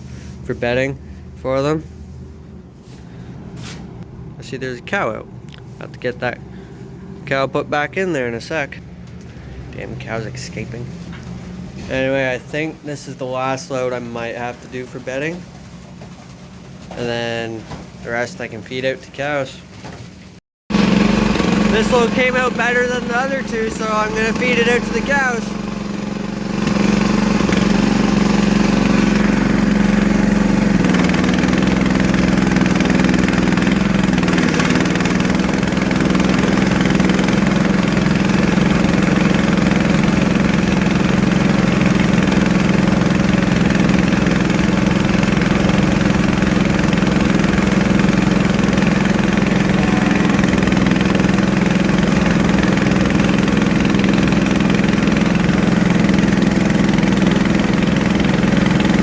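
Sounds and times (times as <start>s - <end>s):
engine humming steadily: 20.7s - 59.0s.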